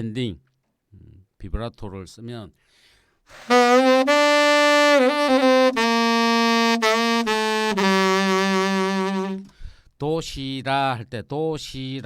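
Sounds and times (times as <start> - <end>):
saxophone playing: 3.3 - 9.5.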